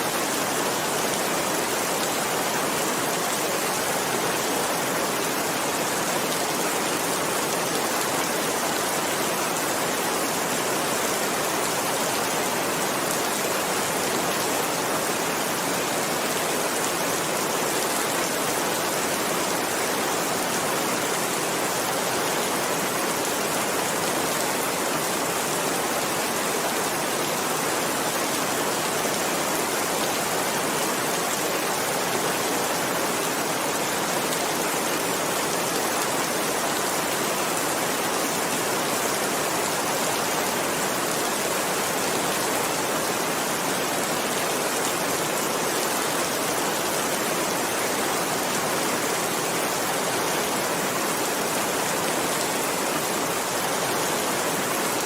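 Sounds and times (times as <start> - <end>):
heavy rain: 0.0 - 55.0.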